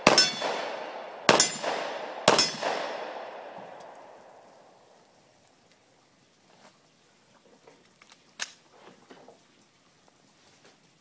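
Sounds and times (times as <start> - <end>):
steel target ringing: 0.0 - 3.2
pistol shots: 0.0 - 4.2.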